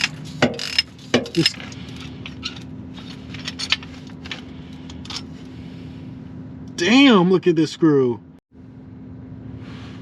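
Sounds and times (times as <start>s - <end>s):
metal tools clinking: 0.0s - 5.3s.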